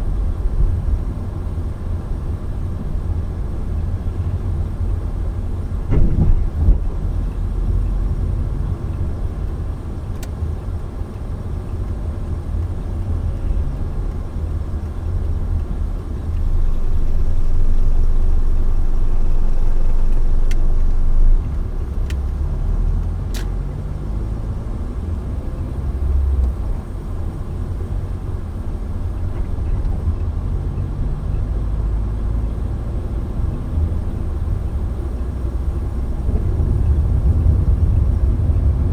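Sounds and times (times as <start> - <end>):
car road and engine rumble: 0.0 - 38.9.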